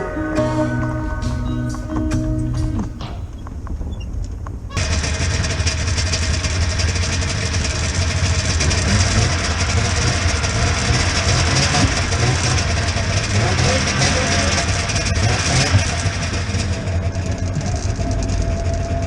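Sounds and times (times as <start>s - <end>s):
truck engine droning: 0.0s - 3.4s, 4.8s - 19.0s
road noise hiss: 4.8s - 17.0s.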